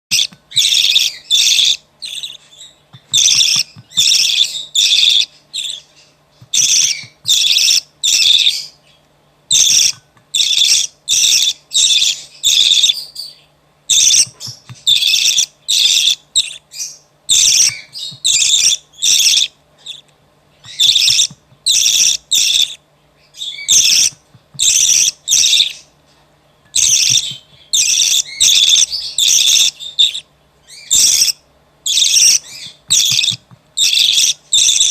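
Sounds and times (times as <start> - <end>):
bird chick raspy begging calls: 26.8 - 34.9.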